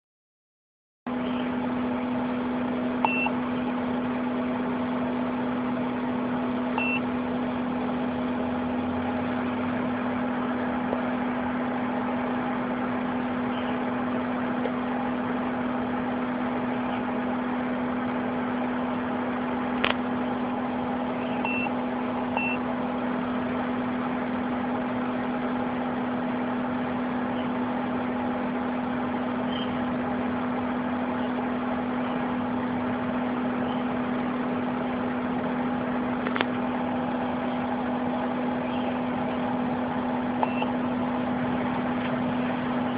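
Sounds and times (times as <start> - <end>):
steady low hum: 1.1 - 42.9
short high-pitched beeps: 3.0 - 3.4, 6.8 - 7.1, 21.2 - 21.8, 22.4 - 22.6, 40.4 - 40.7
sharp click: 19.8 - 20.0.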